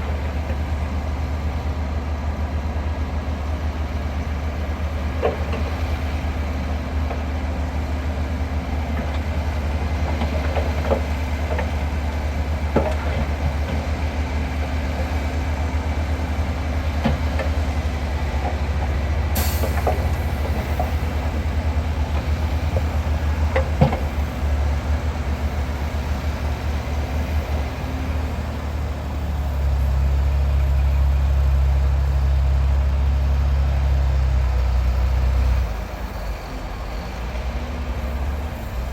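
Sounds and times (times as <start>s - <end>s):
heavy engine low rumble: 0.0s - 38.9s
metallic clanks and knocks: 22.1s - 24.3s.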